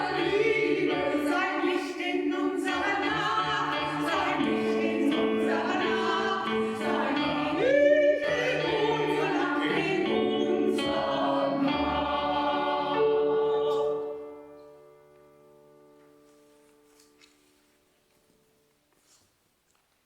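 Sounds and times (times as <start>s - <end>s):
choir singing sustained chords: 0.0s - 15.0s.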